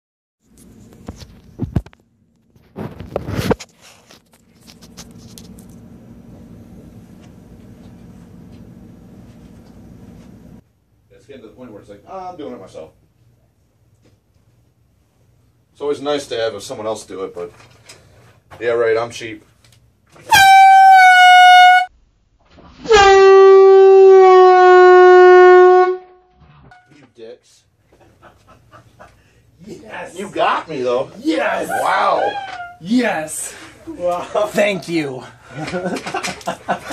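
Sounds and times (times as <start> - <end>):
rustling handling noise: 0.4 - 5.9
steady low hum: 0.5 - 15.8
canned air horn blasting: 20.3 - 21.9, 22.8 - 27.0.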